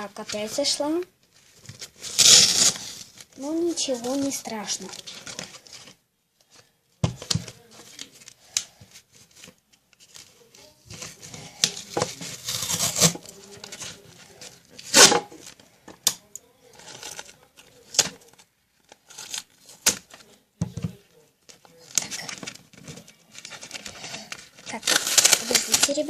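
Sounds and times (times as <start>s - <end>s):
crinkling: 0.0s - 26.0s
adhesive tape tearing: 2.0s - 3.2s, 12.3s - 13.3s, 14.8s - 15.2s, 23.6s - 26.0s.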